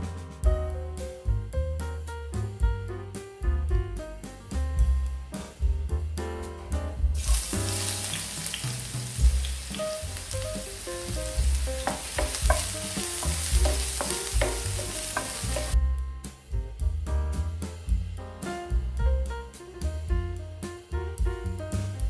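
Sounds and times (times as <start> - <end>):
potatoes sizzling in hot oil: 7.2 - 15.8.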